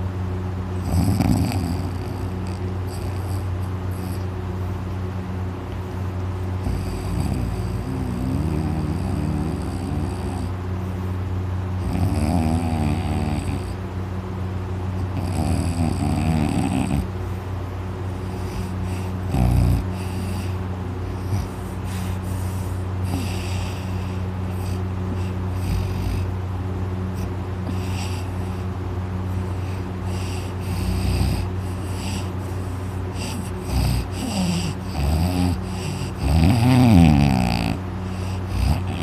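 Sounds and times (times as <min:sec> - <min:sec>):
man snoring loudly: 0:00.8 - 0:04.2, 0:06.6 - 0:10.5, 0:11.8 - 0:13.8, 0:15.1 - 0:17.1, 0:18.5 - 0:20.6, 0:23.0 - 0:26.3, 0:29.5 - 0:32.4, 0:33.1 - 0:39.0.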